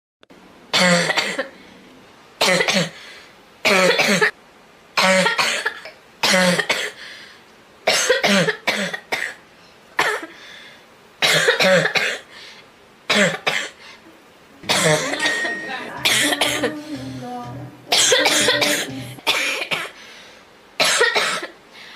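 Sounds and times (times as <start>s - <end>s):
girl coughing: 0.8s - 1.5s, 3.7s - 4.3s, 5.0s - 7.0s, 7.9s - 9.4s, 11.2s - 12.3s, 14.6s - 16.9s, 17.9s - 20.0s, 20.8s - 21.6s.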